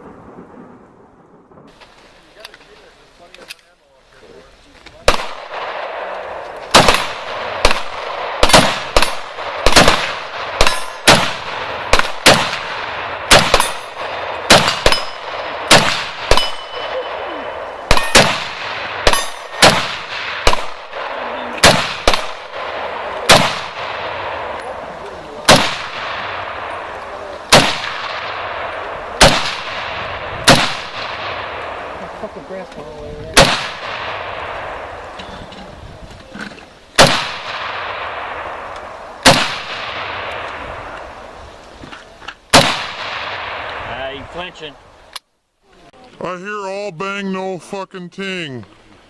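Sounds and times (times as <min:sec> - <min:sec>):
rifle shots echoing: 0:05.0 - 0:32.3, 0:33.4 - 0:35.2, 0:37.0 - 0:41.3, 0:42.5 - 0:44.5.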